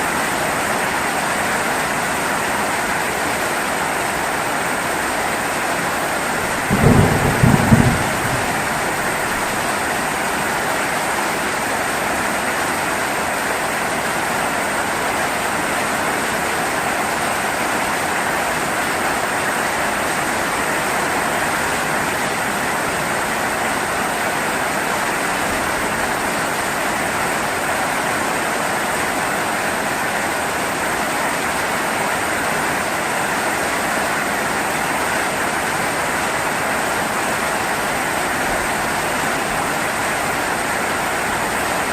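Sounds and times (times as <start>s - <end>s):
heavy rain falling: 0.0s - 41.9s
deep rumble of thunder: 6.6s - 10.0s.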